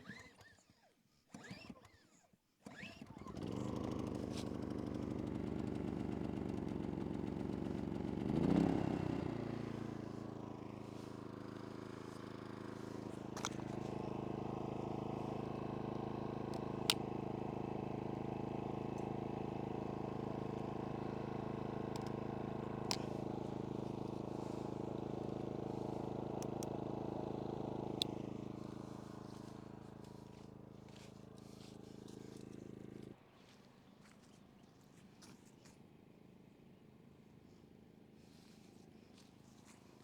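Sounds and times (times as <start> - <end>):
engine idling: 3.4 - 33.2.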